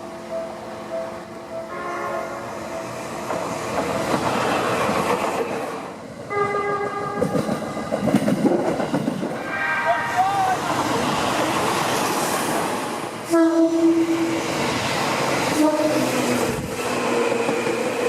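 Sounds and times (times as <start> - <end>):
train rumble and clatter: 0.0 - 18.0
train horn blast: 1.7 - 2.6, 6.3 - 7.3, 9.4 - 10.4, 13.3 - 14.3, 15.5 - 16.3.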